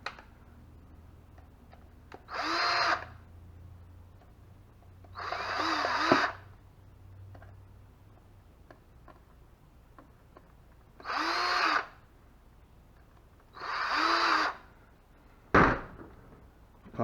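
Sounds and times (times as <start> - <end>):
power drill driving screws: 2.3 - 3.1, 5.2 - 6.4, 11.0 - 12.0, 13.6 - 14.7.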